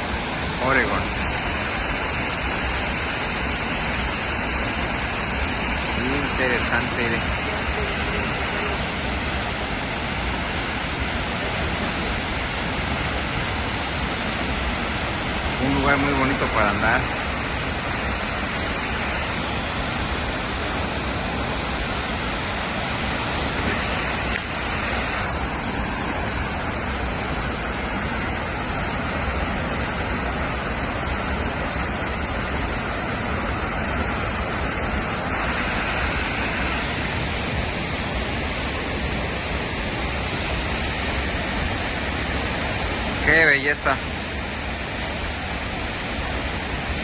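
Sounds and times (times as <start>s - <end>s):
waterfall rushing and splashing: 0.0s - 47.0s.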